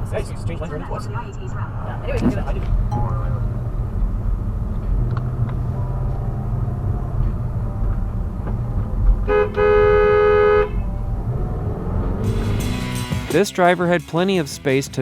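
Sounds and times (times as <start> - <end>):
car horn blast: 9.3 - 10.7.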